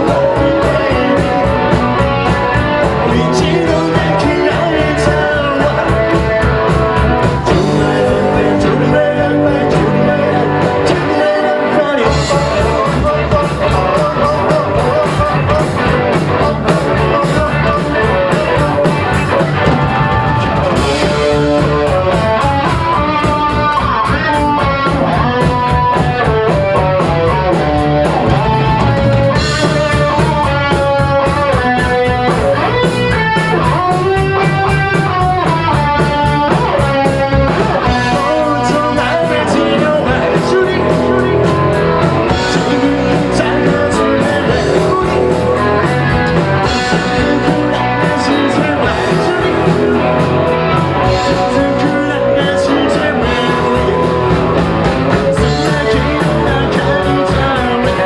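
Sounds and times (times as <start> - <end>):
drums with cymbals: 0.0 - 11.3, 12.0 - 58.0
bass guitar: 0.0 - 58.0
electric guitar melody: 0.0 - 58.0.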